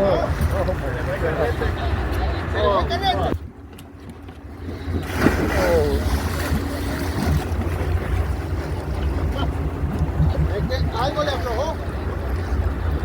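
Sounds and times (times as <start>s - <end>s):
rushing water: 4.6s - 13.0s.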